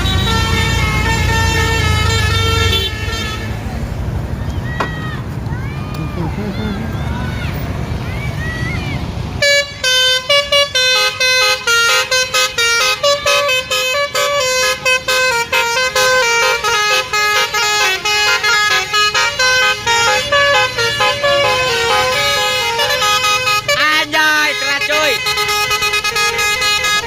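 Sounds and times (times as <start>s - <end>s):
musical air horn melody: 0.0s - 3.6s, 9.4s - 27.0s.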